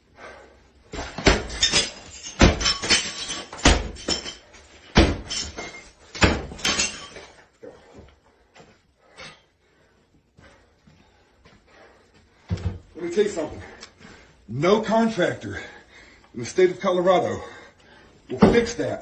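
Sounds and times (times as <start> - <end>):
breaking material crashing: 1.0 - 7.4.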